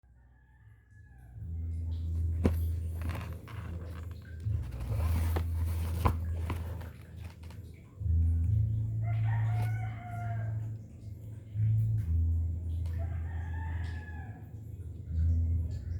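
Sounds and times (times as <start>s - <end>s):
box being opened: 2.0s - 7.6s.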